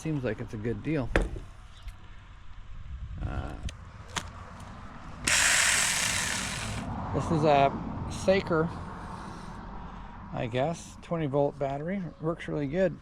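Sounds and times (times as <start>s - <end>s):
loud steady rushing noise: 5.2s - 8.0s.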